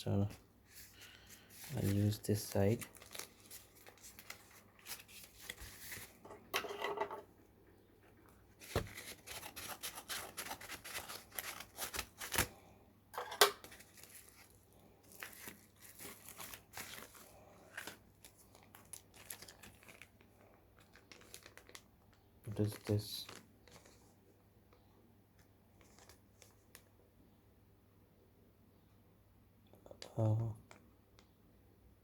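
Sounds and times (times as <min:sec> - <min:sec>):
packaging tearing and crinkling: 0:01.6 - 0:06.2, 0:08.6 - 0:12.6, 0:13.6 - 0:24.0.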